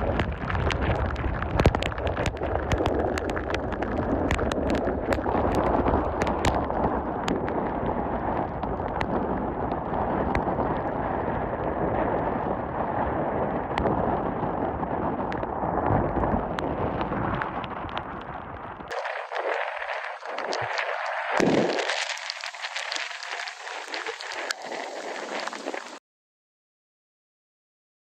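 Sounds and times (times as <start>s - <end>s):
sharp crackles: 0.0s - 26.0s
wind buffeting microphone: 0.0s - 26.0s
crashing surf: 13.6s - 26.0s.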